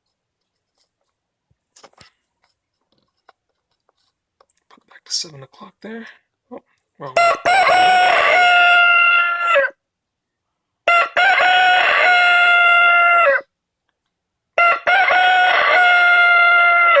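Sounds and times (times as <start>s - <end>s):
electronic rooster crow alarm: 7.2s - 9.8s, 10.9s - 13.5s, 14.6s - 17.0s.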